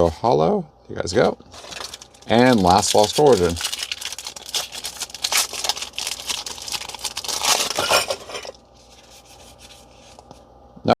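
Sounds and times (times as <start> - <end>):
foil wrapper crinkling and tearing: 1.5 - 10.2
faint handling sounds: 7.4 - 10.5.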